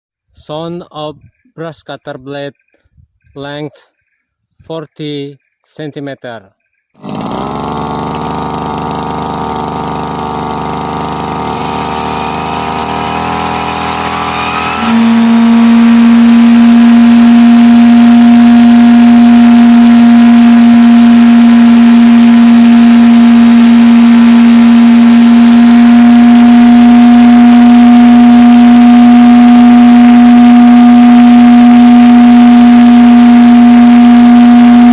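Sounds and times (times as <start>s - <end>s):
brush cutter engine revving: 7.0s - 34.9s
spinning blade humming: 7.0s - 34.9s.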